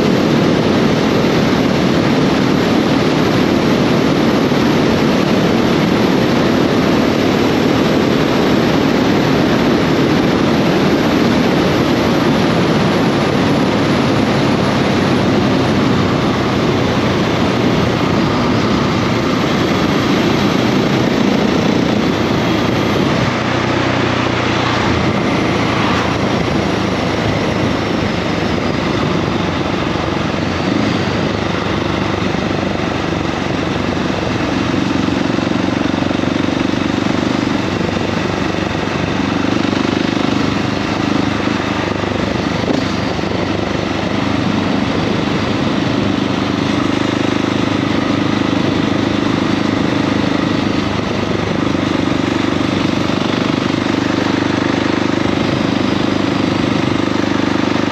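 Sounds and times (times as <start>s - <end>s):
motorcycle engine running: 0.0s - 57.9s
wind and road noise: 0.0s - 57.9s.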